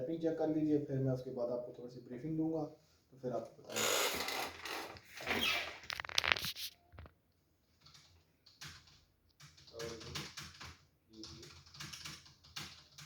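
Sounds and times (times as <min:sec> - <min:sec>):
keyboard typing: 0:07.8 - 0:13.0.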